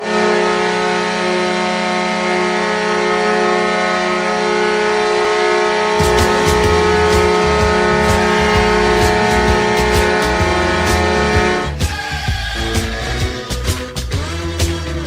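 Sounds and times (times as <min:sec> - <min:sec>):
goal horn blast: 0:00.0 - 0:15.0
thumping drum beat: 0:06.0 - 0:15.0.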